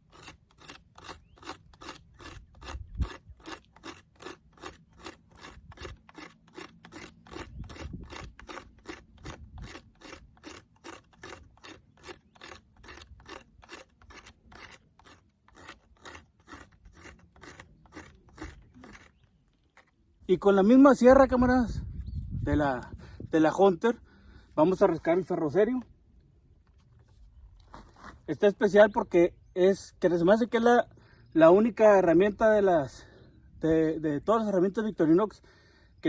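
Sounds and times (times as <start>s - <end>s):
knife scraping wood into shavings: 0.0s - 19.9s.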